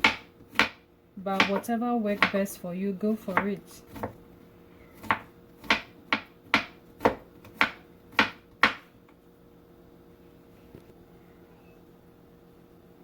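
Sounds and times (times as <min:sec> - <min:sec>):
knife striking cutting board: 0:05.0 - 0:08.9.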